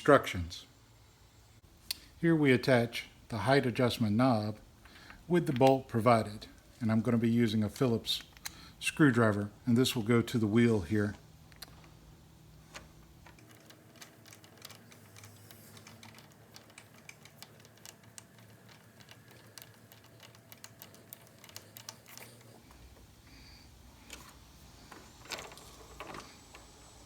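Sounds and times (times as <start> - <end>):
screwdriver clicking and ticking: 7.8 - 8.6, 12.7 - 22.9.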